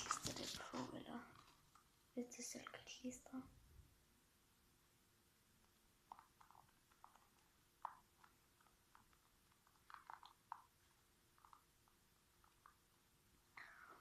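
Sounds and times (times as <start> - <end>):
paper clicks and crinkles: 0.0 - 1.6.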